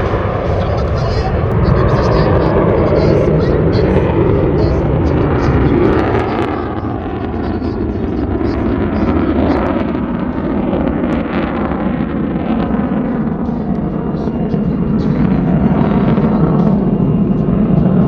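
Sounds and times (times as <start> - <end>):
jet flying past: 0.0 - 18.0.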